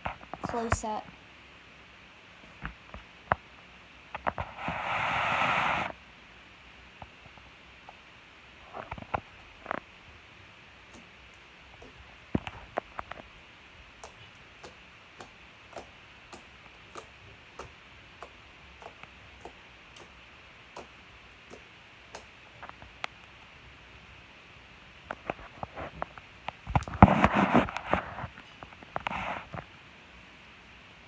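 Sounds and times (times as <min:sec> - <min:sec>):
slime clicking and popping: 0:14.0 - 0:22.4.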